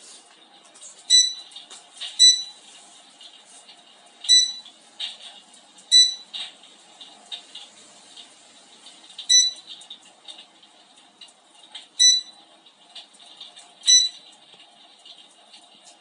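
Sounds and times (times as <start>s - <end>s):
short beeps: 1.1s - 1.5s, 2.2s - 2.6s, 4.3s - 4.6s, 5.9s - 6.3s, 9.3s - 9.6s, 12.0s - 12.3s, 13.9s - 14.2s.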